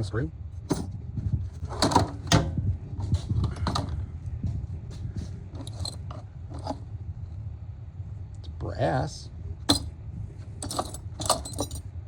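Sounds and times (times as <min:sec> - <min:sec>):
steady low hum: 0:00.0 - 0:12.0
tools rummaged in a drawer: 0:00.7 - 0:00.9, 0:01.6 - 0:04.0, 0:05.2 - 0:06.8, 0:10.6 - 0:11.9.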